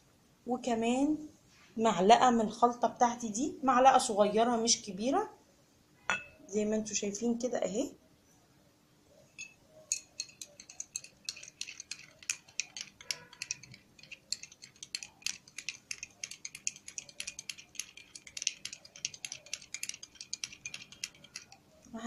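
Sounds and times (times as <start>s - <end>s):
spoon clinking against cup: 6.1s - 6.4s, 9.4s - 21.6s.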